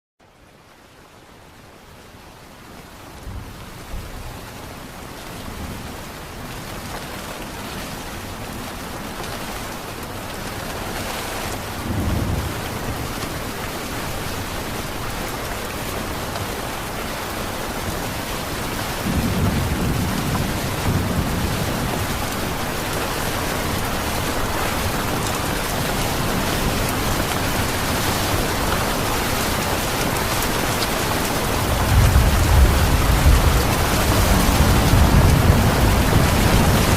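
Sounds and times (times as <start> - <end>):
heavy rain: 0.2 - 36.9
thunder rolling: 19.0 - 22.6, 31.6 - 36.9.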